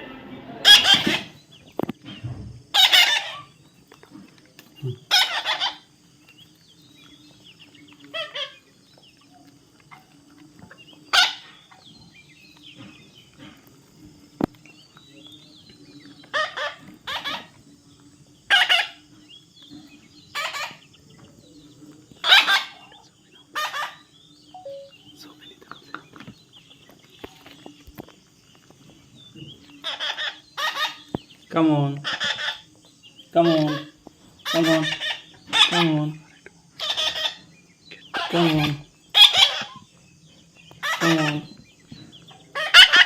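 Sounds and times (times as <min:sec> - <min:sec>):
parrot squawking: 0:00.6 - 0:01.3, 0:02.8 - 0:03.4, 0:05.1 - 0:05.8, 0:18.5 - 0:19.0, 0:23.6 - 0:24.0, 0:29.8 - 0:31.0, 0:32.0 - 0:32.6, 0:33.4 - 0:35.9, 0:36.8 - 0:37.4, 0:40.8 - 0:41.5, 0:42.6 - 0:43.0.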